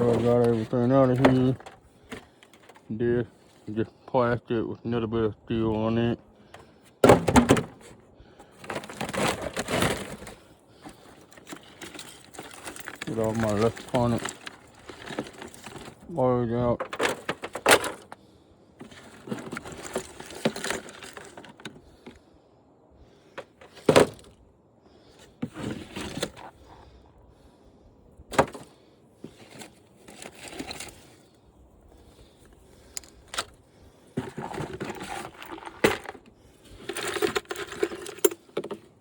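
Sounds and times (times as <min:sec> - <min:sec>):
plastic and metal parts scraping: 0:00.0 - 0:02.9, 0:06.5 - 0:18.2, 0:18.8 - 0:22.2, 0:23.3 - 0:24.4, 0:25.1 - 0:26.9, 0:28.3 - 0:31.4, 0:32.0 - 0:39.0.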